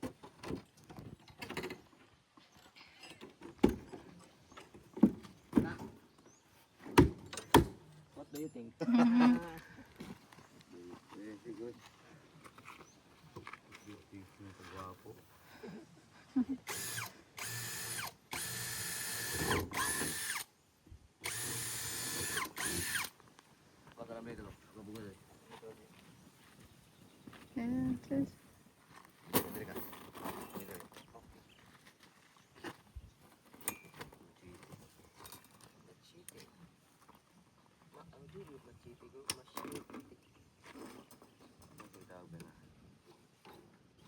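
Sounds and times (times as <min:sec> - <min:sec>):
power drill whining: 0:16.6 - 0:20.5, 0:21.2 - 0:23.2.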